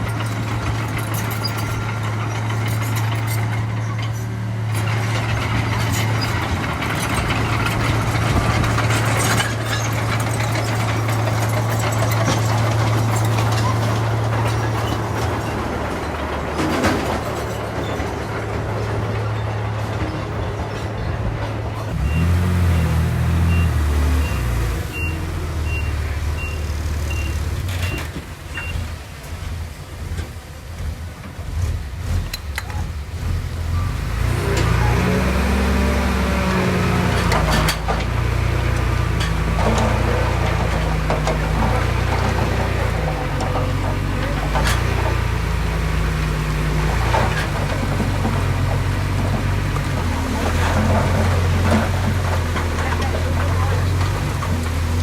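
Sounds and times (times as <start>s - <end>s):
heavy diesel engine running: 0.0s - 55.0s
reversing alarm beeping: 22.0s - 28.0s.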